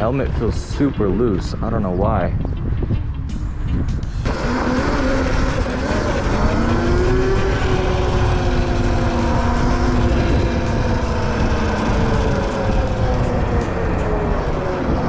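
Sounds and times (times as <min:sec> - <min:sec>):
wind rumble on microphone: 0:00.0 - 0:15.0
electric motor whine: 0:04.2 - 0:15.0.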